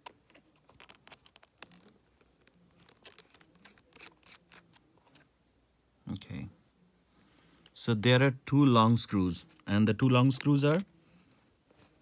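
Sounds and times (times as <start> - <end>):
small tool clicks and scratches: 0.0 - 5.2.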